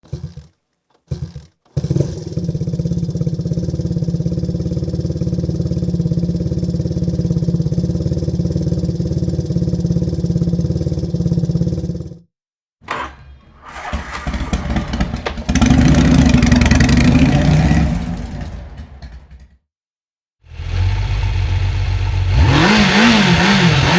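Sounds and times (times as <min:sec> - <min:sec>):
motorcycle engine idling: 0:00.0 - 0:12.3, 0:14.6 - 0:18.9.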